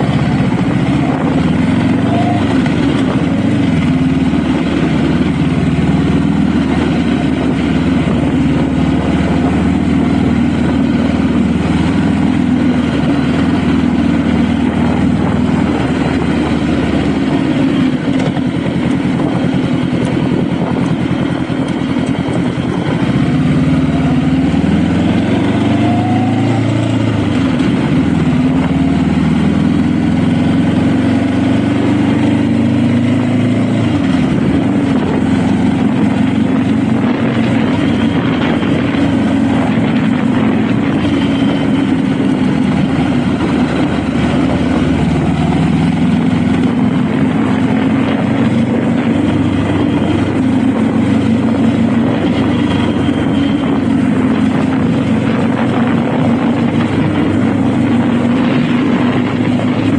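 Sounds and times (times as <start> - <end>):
motorcycle engine accelerating: 0.0 - 59.9
wind on microphone: 0.0 - 59.9.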